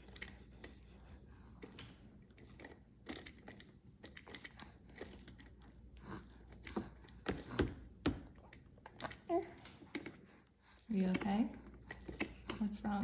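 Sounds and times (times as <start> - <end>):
child chewing food: 0.0 - 10.9.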